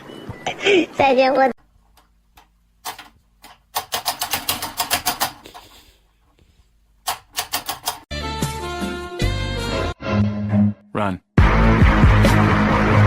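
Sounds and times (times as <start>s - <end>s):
rapid sharp clicks: 2.0s - 5.6s, 7.0s - 8.1s
music: 8.1s - 13.0s.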